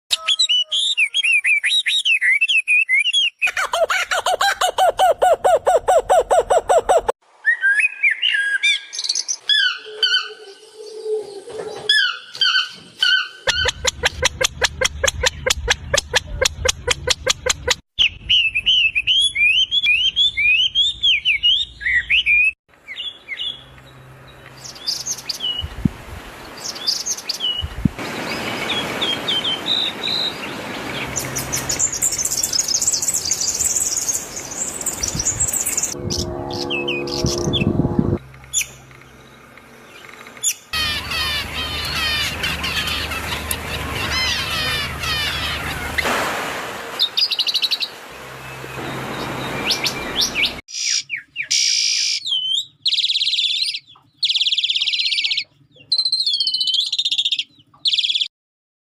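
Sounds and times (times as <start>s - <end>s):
birds chirping and trilling: 0.1s - 46.1s, 46.9s - 58.3s.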